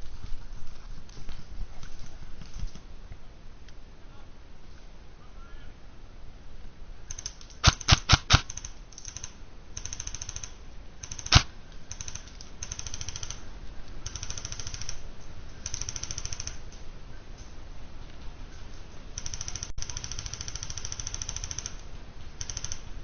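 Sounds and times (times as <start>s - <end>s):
airsoft guns rapid clicking: 7.1s - 13.4s, 14.0s - 15.0s, 15.6s - 16.6s, 19.2s - 21.8s, 22.4s - 22.9s
loud sharp gunshots: 7.6s - 8.5s, 11.1s - 11.5s.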